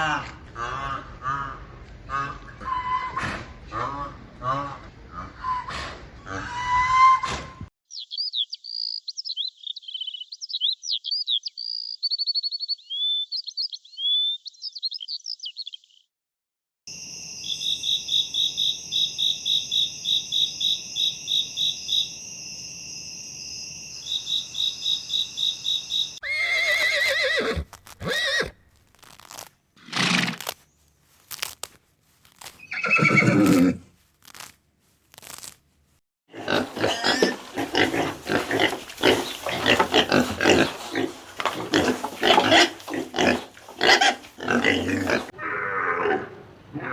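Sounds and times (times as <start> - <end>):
high bird chirps: 7.9 - 16.0, 24.0 - 26.3
horse whinnying: 26.2 - 28.6, 29.8 - 30.5, 32.7 - 33.8
loud crunching: 26.6 - 45.3.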